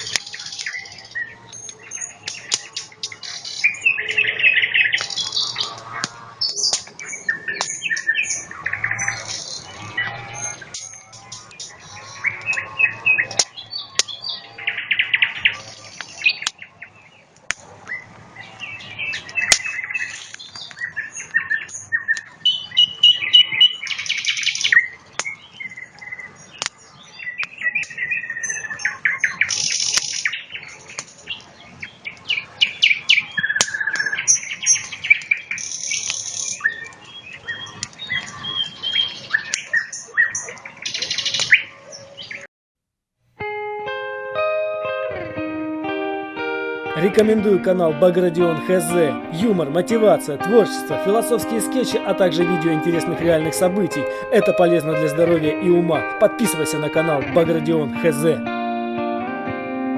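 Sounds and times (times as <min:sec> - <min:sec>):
nightingale singing: 0:00.0 - 0:16.8.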